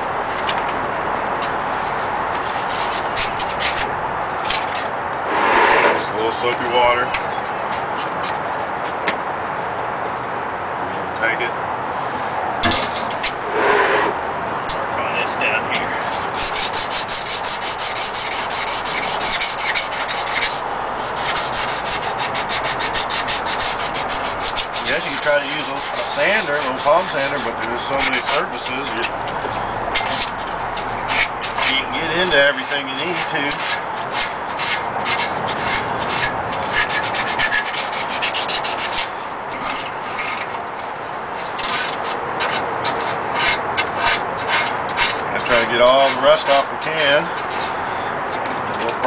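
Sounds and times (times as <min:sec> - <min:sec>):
sandpaper rubbing on steel: 0:01.6 - 0:03.8, 0:04.4 - 0:06.1, 0:16.0 - 0:47.8.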